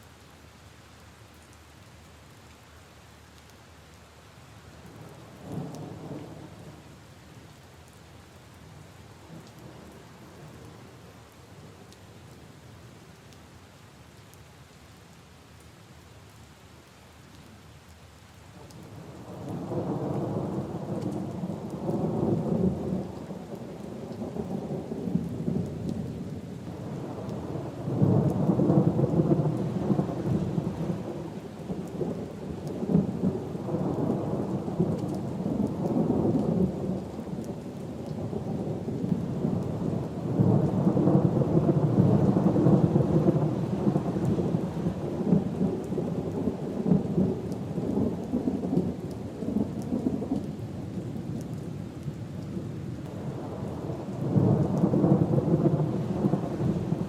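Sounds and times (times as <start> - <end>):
rain falling on puddles: 0.0 - 57.0
rolling thunder: 38.2 - 50.4, 53.1 - 57.0.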